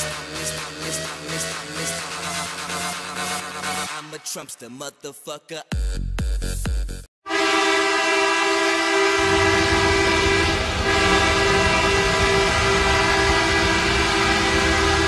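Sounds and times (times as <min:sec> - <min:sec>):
goal horn blasting: 0:07.2 - 0:15.0.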